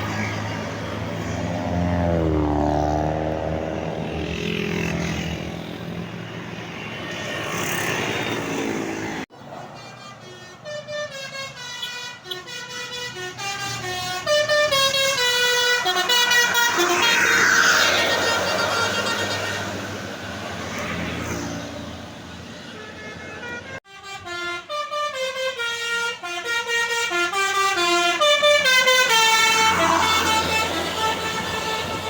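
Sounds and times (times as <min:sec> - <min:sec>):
multi-tone bus horn playing tune: 0:09.6 - 0:21.6, 0:22.5 - 0:32.0.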